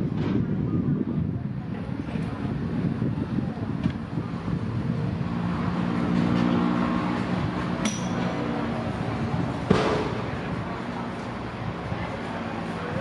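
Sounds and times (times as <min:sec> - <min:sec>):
sharp metallic clink: 0:07.8 - 0:08.3.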